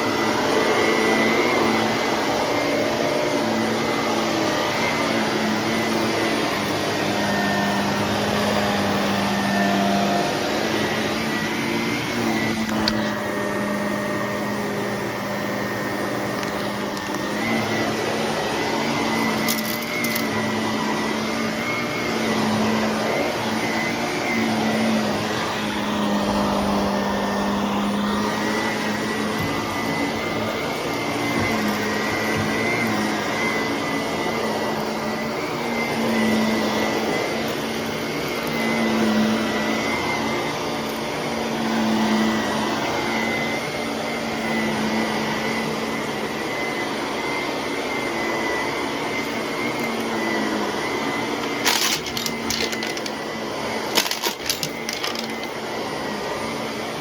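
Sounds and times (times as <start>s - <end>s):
vacuum cleaner running: 0.0s - 57.0s
clicks and rattles: 51.6s - 53.1s, 53.9s - 55.5s.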